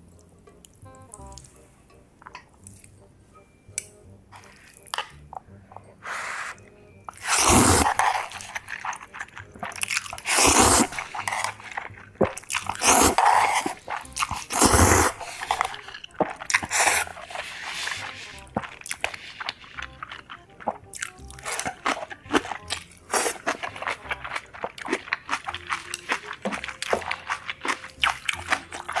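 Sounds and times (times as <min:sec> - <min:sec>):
crunchy food chewing: 0:07.1 - 0:29.0.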